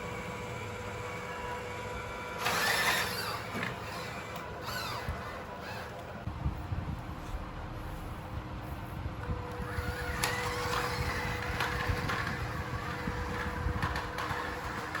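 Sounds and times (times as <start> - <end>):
small electric motor whine: 0.0 - 6.3, 9.2 - 15.0
wind rumble on microphone: 6.3 - 15.0.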